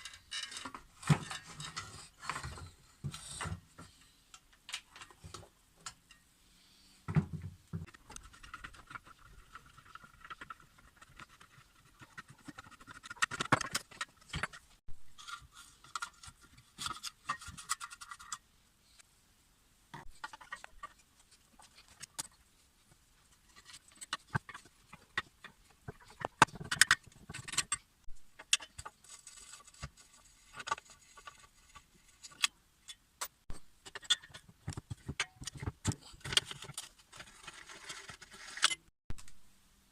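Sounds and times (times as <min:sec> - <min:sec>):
metal parts and tools clinking: 0:00.0 - 0:02.7, 0:23.4 - 0:38.9.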